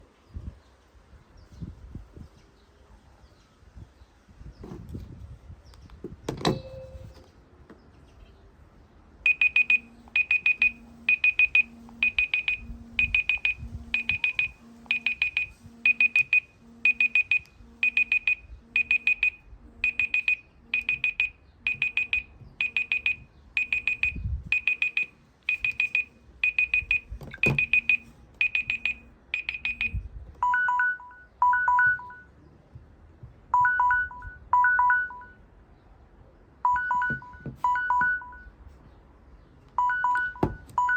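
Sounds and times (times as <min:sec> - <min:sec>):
rapid high-pitched alarm beeps: 0:09.3 - 0:30.0
lower two-note alarm beeps: 0:09.3 - 0:32.3.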